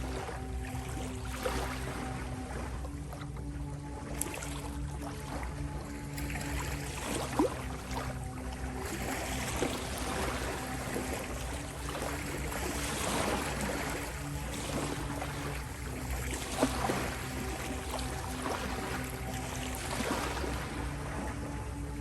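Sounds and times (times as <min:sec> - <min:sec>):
soft musical drone: 0:00.0 - 0:22.0
ocean waves washing: 0:07.0 - 0:22.0.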